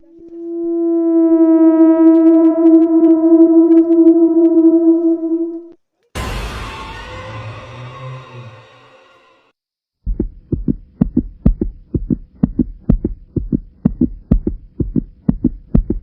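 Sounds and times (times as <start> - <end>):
short low thumps: 10.1 - 16.0.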